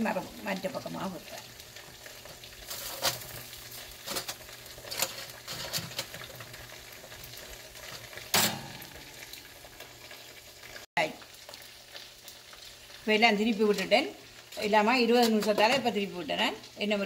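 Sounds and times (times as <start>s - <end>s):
chicken sizzling in a pan: 0.0s - 17.0s.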